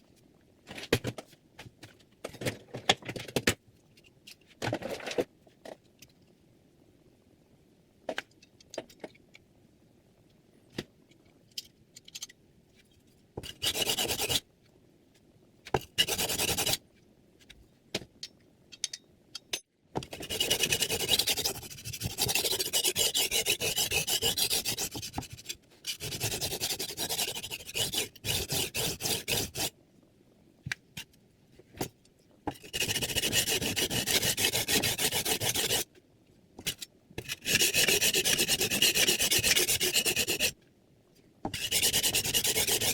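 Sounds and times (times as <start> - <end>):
knife grating on sharpening plate: 20.2 - 29.7, 32.5 - 35.8, 36.7 - 40.5, 41.5 - 42.9.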